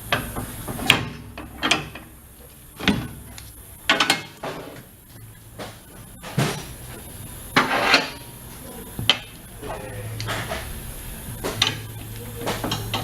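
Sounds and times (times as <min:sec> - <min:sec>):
low machine hum: 0:00.0 - 0:13.0
tire changer working: 0:00.0 - 0:13.0
metal tools clanking: 0:00.1 - 0:04.9.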